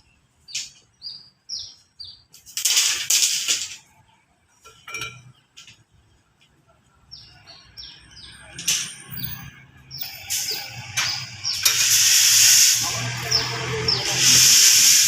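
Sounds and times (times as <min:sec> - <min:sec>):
loud steady hiss: 0:10.0 - 0:15.0.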